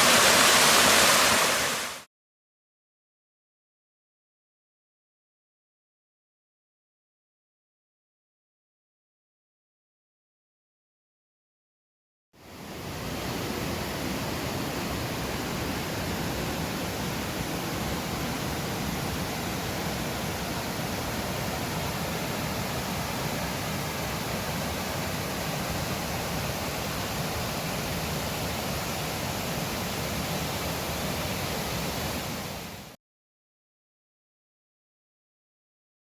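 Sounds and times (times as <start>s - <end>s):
waterfall rushing: 0.0s - 2.1s, 12.5s - 32.9s.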